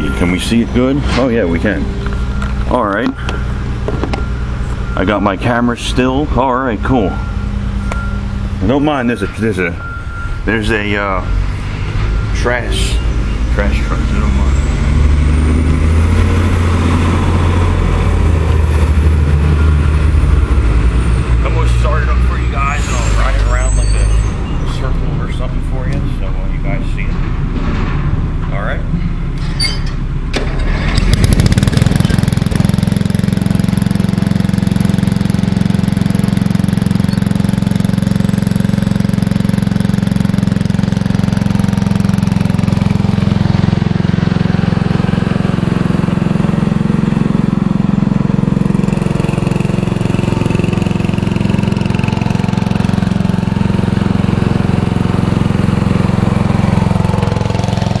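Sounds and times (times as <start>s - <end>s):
lawn tractor engine cranking and running: 29.6s - 58.0s.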